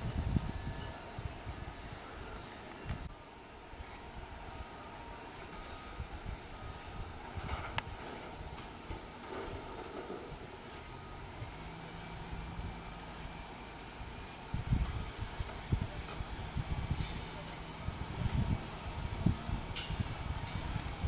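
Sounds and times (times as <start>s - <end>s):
high-pitched hiss: 0.0s - 21.0s
low rumbling: 5.9s - 21.0s.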